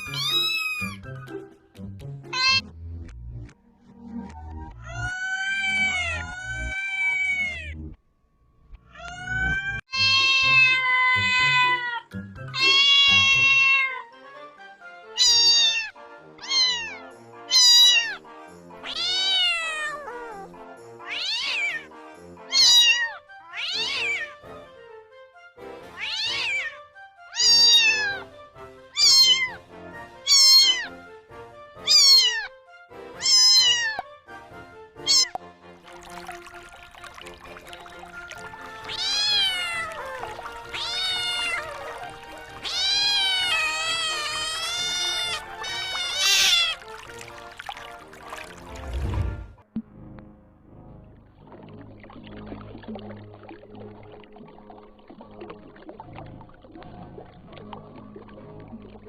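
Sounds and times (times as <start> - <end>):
cat meowing: 0.0 - 1.0, 2.3 - 2.6, 4.8 - 7.8, 8.9 - 14.1, 15.2 - 18.2, 18.8 - 21.9, 22.5 - 24.4, 26.0 - 28.2, 29.0 - 29.6, 30.3 - 31.0, 31.8 - 32.5, 33.2 - 34.0, 35.0 - 35.4, 38.8 - 47.3.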